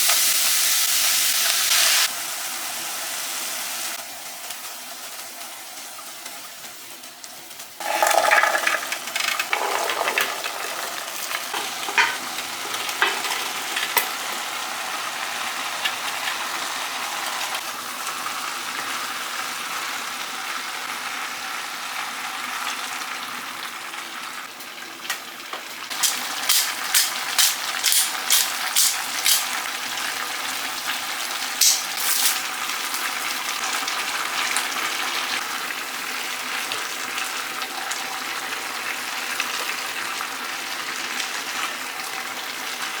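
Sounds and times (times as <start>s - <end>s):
food sizzling in a pan: 0.0s - 43.0s
utensil clicking against pan: 25.9s - 29.6s, 31.6s - 32.4s.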